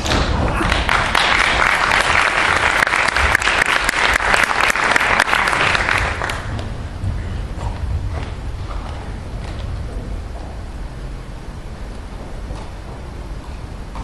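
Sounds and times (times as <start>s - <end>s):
audience applauding: 0.4s - 6.6s.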